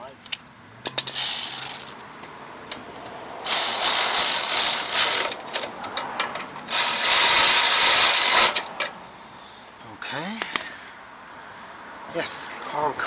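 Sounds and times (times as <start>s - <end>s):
drill ratcheting whir: 3.4s - 5.7s, 6.7s - 8.8s
drill clicks: 6.7s - 8.8s.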